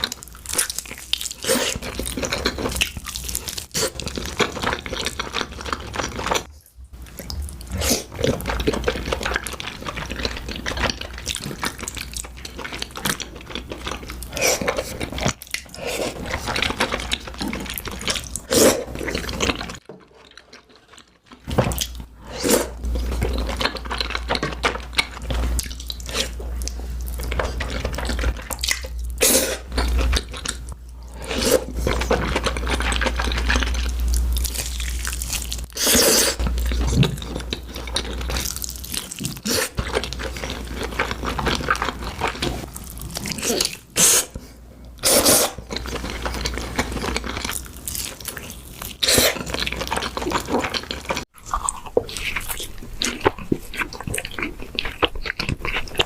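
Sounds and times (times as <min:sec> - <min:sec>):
chewing and mouth smacks: 0:22.9 - 0:30.8, 0:45.6 - 0:56.0.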